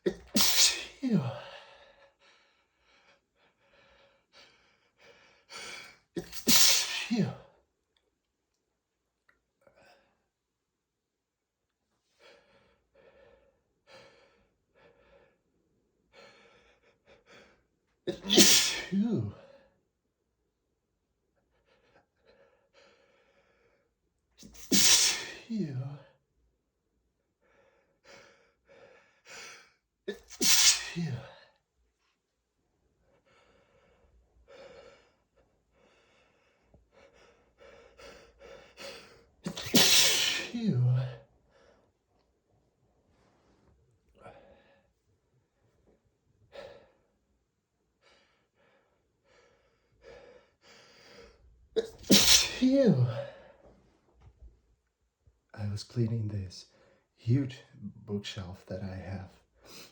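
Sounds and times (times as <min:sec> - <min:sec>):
man sneezing: 0:00.0 - 0:01.6, 0:06.2 - 0:07.5, 0:18.1 - 0:19.5, 0:24.4 - 0:26.1, 0:30.1 - 0:31.4, 0:39.4 - 0:41.2, 0:51.8 - 0:53.5.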